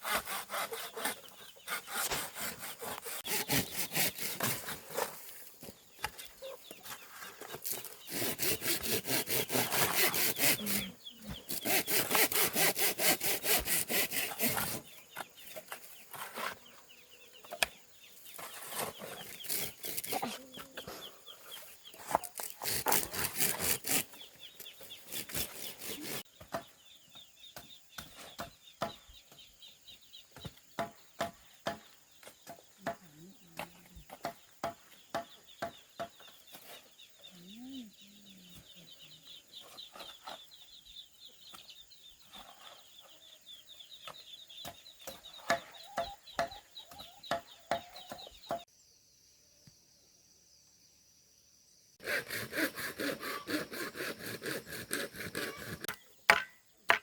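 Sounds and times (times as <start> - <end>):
noisy flurry of birds: 0.0 - 48.7
chicks peeping: 0.7 - 4.4, 14.3 - 23.0, 24.0 - 48.6
chickens clucking: 5.0 - 12.6, 14.3 - 22.7, 44.0 - 48.6.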